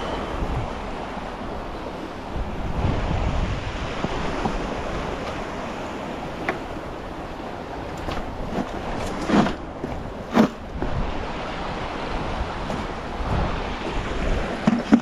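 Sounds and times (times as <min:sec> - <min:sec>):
creek water rushing: 0:00.0 - 0:09.0
wind on microphone: 0:00.0 - 0:15.0.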